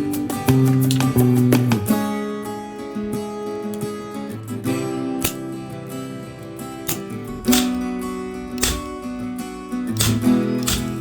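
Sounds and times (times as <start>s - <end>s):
plucked acoustic guitar: 0.0s - 11.0s.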